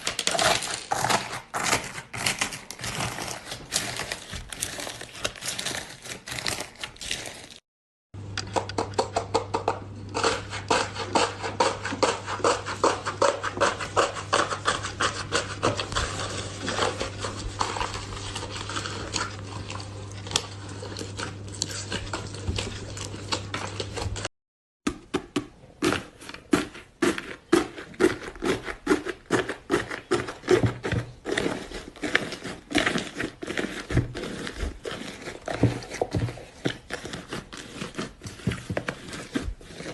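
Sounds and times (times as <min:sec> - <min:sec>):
slime crunching and crackling: 0:00.0 - 0:07.6, 0:12.4 - 0:24.2, 0:25.7 - 0:39.9.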